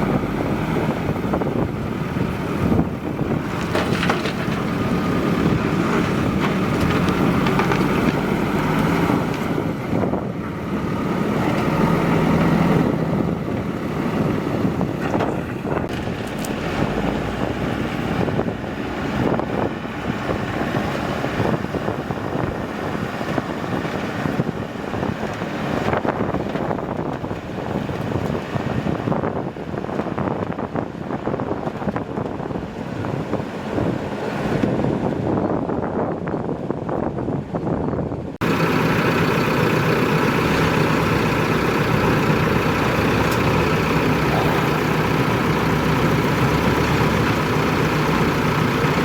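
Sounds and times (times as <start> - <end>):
diesel engine under load: 0.0 - 49.0
wind buffeting microphone: 0.0 - 49.0
knocks and rattles: 3.4 - 8.3.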